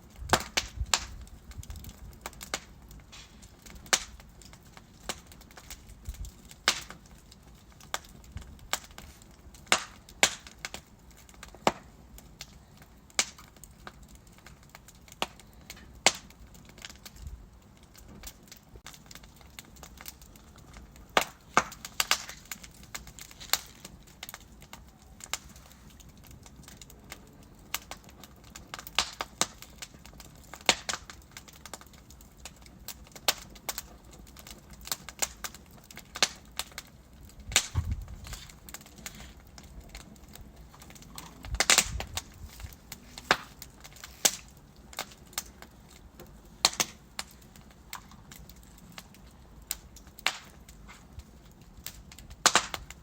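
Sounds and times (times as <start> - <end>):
fire crackling and popping: 0.0 - 53.0
low thud: 37.7 - 38.2.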